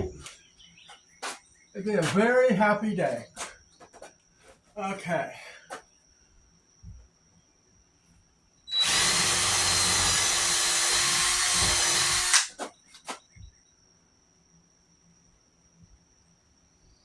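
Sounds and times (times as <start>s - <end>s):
cordless drill drilling wood: 8.7s - 12.6s.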